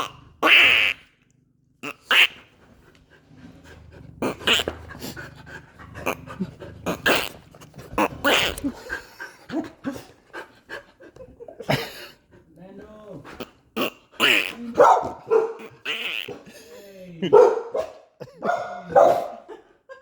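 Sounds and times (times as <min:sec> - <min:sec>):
dog panting: 0:02.0 - 0:17.6.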